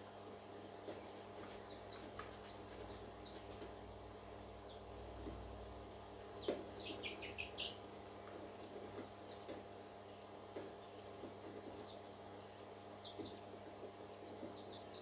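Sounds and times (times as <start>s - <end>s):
parrot chick cheeping: 5.9s - 15.0s.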